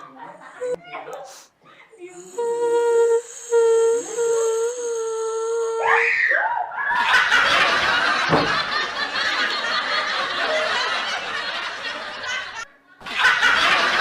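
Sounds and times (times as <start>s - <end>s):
loud dense laughter: 6.8s - 14.0s.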